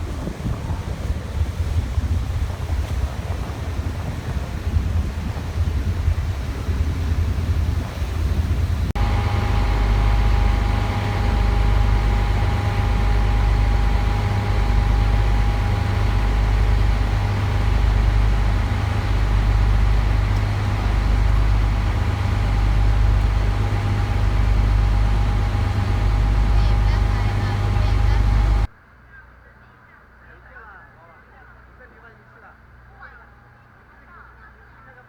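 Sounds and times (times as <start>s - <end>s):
boat engine whining: 0.0s - 28.7s
wind buffeting microphone: 0.0s - 28.7s.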